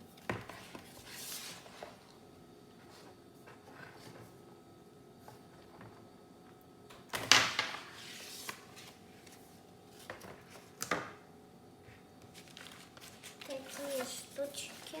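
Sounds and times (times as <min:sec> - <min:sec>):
paper and cardboard rustling: 0:00.3 - 0:02.0, 0:07.8 - 0:10.8, 0:12.2 - 0:15.0.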